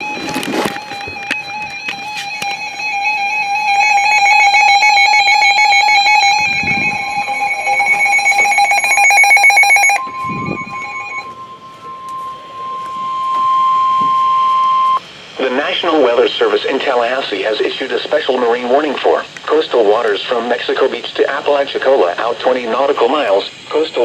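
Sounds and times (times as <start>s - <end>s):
warbling electronic alarm tone: 0.0s - 17.0s
steady warning alarm tone: 0.0s - 24.0s.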